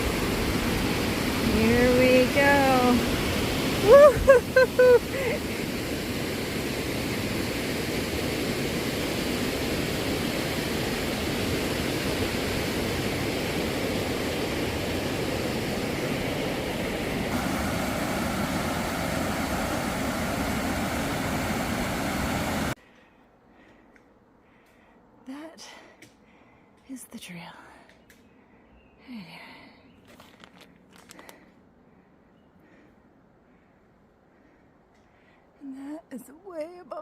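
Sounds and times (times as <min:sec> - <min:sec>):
woman shouting woo-hoo: 0:03.8 - 0:05.4
river rushing whitewater: 0:05.2 - 0:22.8.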